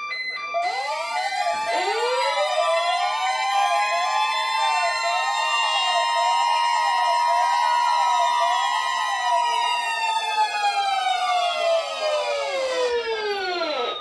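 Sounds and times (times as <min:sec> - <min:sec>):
sirens wailing: 0:00.5 - 0:14.0.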